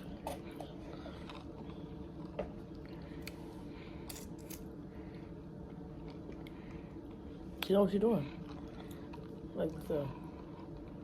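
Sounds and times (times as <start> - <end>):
steady low hum: 0.0 - 11.0
chewing with clicks and smacks: 6.0 - 11.0.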